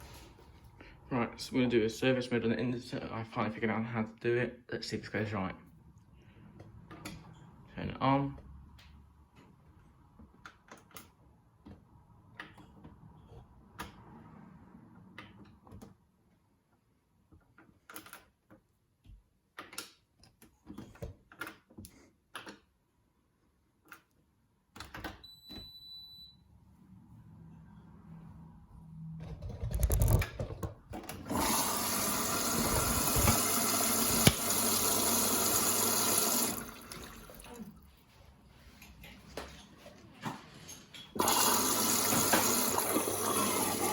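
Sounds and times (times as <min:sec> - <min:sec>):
water rushing into washing machine: 0:31.2 - 0:37.7, 0:41.2 - 0:43.9.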